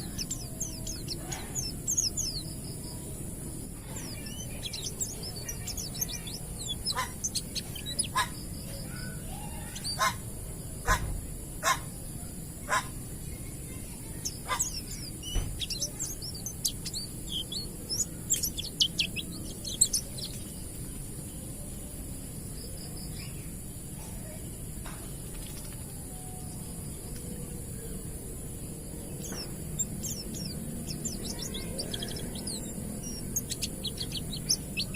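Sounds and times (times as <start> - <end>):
small bird rapid high chirps: 0.0 - 3.1, 3.7 - 10.2, 12.7 - 21.0, 28.6 - 34.9.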